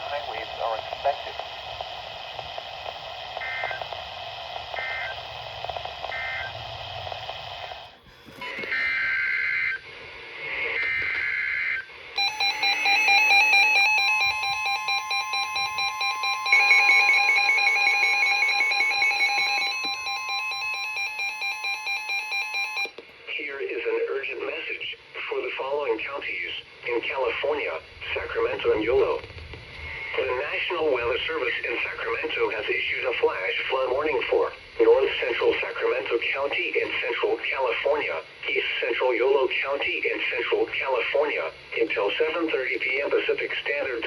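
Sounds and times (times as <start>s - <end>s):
light radio static: 0.0s - 6.6s, 9.8s - 11.3s, 22.7s - 44.0s
steady warning alarm tone: 11.6s - 23.0s
pulsing electronic alert tone: 12.2s - 22.9s.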